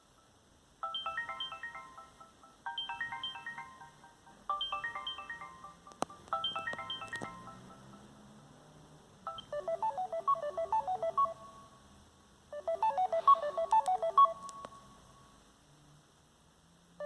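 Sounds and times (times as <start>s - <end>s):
phone ringtone melody: 0.8s - 8.1s, 9.3s - 11.8s, 12.5s - 14.9s.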